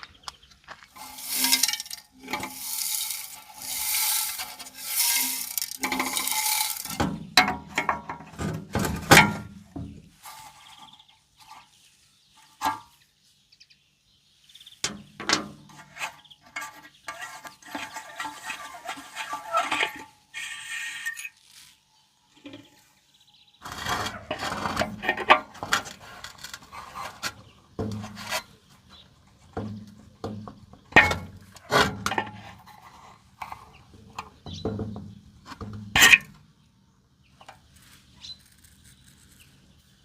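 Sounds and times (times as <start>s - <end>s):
hard parts clinking and knocking: 0.6s - 10.6s, 14.8s - 20.2s, 23.7s - 28.6s, 29.5s - 36.4s
rhythmic rasping strokes: 1.0s - 7.7s.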